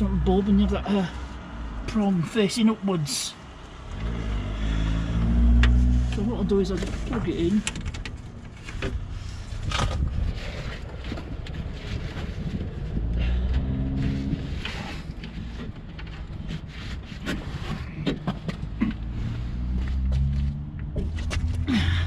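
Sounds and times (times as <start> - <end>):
wind rumbling on microphone: 4.8 - 21.7
small clicks and rustles: 5.6 - 19.1.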